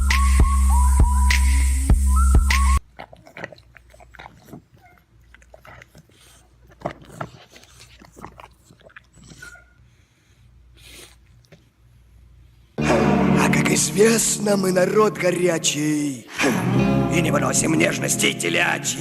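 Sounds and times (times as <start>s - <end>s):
pet chewing: 2.8s - 9.7s.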